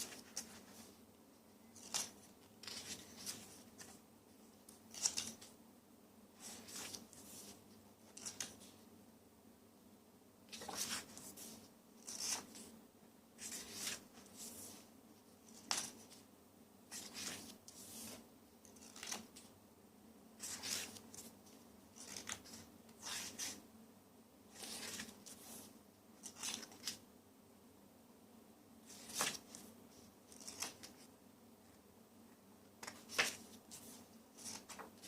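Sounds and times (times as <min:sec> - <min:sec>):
pages turning: 0:00.0 - 0:00.9, 0:01.8 - 0:04.0, 0:04.7 - 0:05.5, 0:06.4 - 0:08.8, 0:10.5 - 0:12.7, 0:13.4 - 0:16.2, 0:16.9 - 0:19.5, 0:20.4 - 0:21.3, 0:21.9 - 0:23.6, 0:24.5 - 0:27.0, 0:28.9 - 0:29.7, 0:30.3 - 0:31.1, 0:32.8 - 0:35.0.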